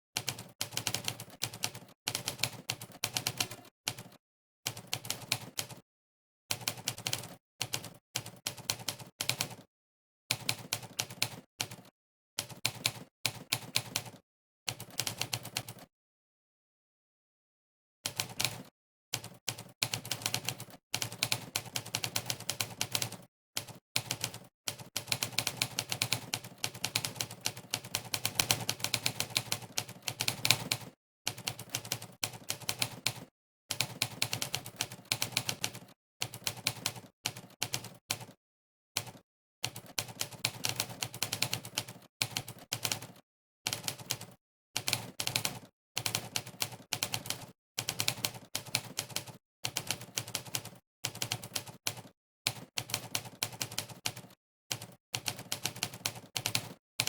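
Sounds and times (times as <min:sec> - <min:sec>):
typewriter keystroke clacks: 0:39.0 - 0:56.8.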